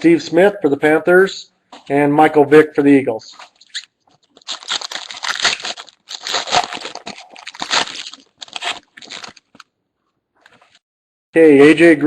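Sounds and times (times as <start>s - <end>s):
foil wrapper crinkling and tearing: 3.4s - 9.7s.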